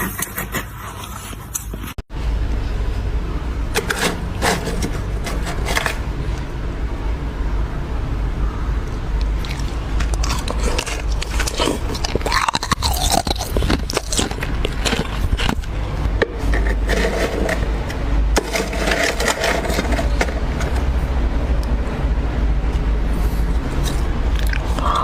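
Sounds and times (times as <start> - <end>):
ice crunching in mouth: 9.3 - 15.7, 23.8 - 25.0.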